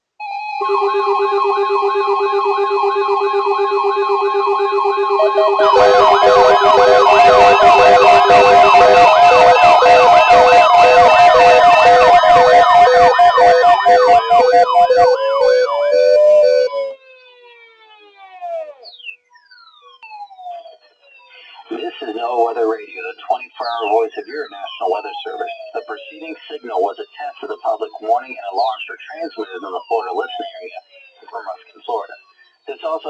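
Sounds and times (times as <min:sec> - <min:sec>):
warbling siren: 0:00.2 - 0:27.6, 0:29.4 - 0:33.0
electronic beeping tones: 0:00.6 - 0:17.6, 0:20.6 - 0:33.0
steady electronic tones: 0:00.6 - 0:17.7.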